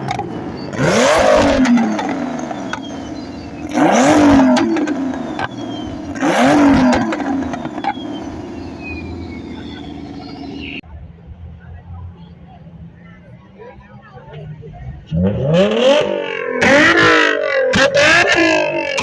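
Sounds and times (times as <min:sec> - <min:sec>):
engine revving in quick blips: 0:00.0 - 0:10.8, 0:14.8 - 0:19.0.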